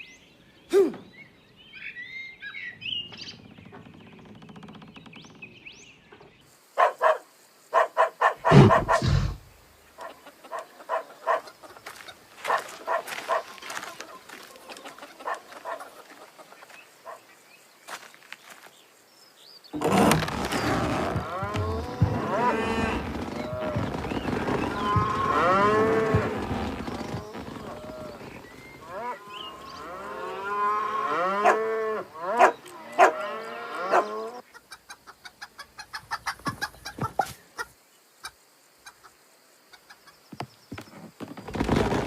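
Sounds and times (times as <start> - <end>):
cartoon farm animals calling: 7.8 - 9.4, 21.1 - 37.7
cattle mooing: 21.0 - 34.4.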